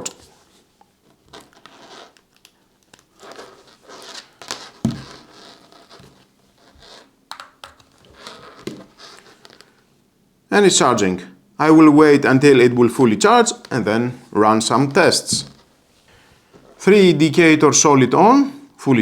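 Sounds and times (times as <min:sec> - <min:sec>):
rustling and handling noise: 0:00.0 - 0:10.0, 0:12.8 - 0:16.9.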